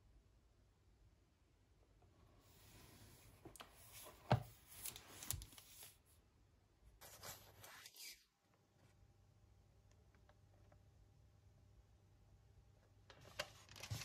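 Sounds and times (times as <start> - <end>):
rustling and handling noises: 2.4 - 6.2, 7.0 - 9.0, 13.1 - 14.0.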